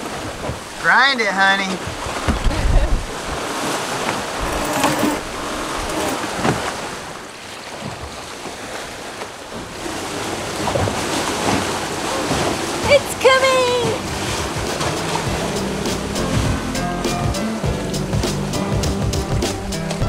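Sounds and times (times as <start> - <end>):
waves rushing past boat: 0.0 - 20.0
wind rushing: 1.8 - 6.4
wind buffeting microphone: 1.8 - 7.3.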